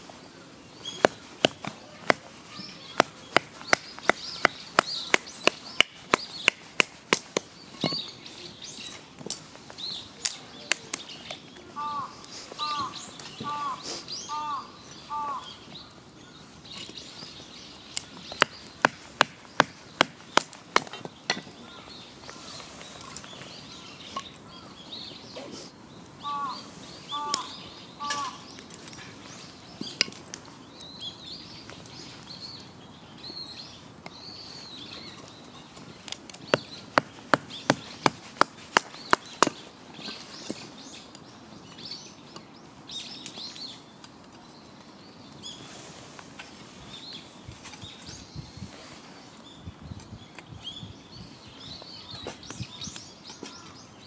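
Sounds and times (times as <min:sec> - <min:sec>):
birds calling: 0:00.0 - 0:54.0
bird's repeated short calls: 0:11.8 - 0:15.5, 0:26.2 - 0:28.5.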